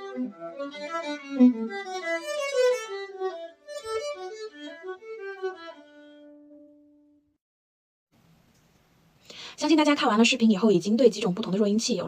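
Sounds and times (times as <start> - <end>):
viola bowed melody: 0.0 - 7.3.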